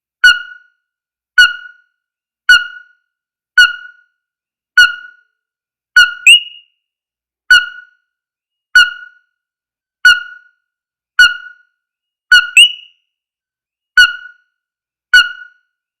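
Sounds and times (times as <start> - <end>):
frog call ringtone: 0.2 - 0.8, 1.4 - 4.2, 4.8 - 5.3, 6.0 - 6.8, 7.5 - 8.1, 8.8 - 9.3, 10.0 - 10.6, 11.2 - 13.0, 14.0 - 15.7.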